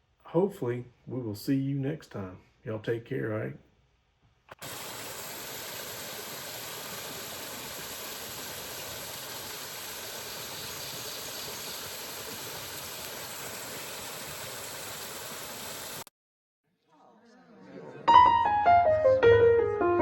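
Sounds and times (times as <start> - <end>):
steady hiss: 4.5 - 16.1.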